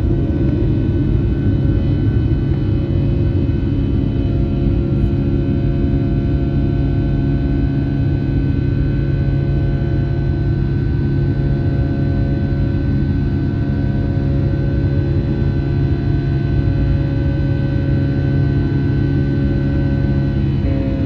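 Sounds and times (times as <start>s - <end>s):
whining engine tones: 0.0s - 5.8s, 20.2s - 21.0s
jet engines droning in cabin: 0.0s - 21.0s.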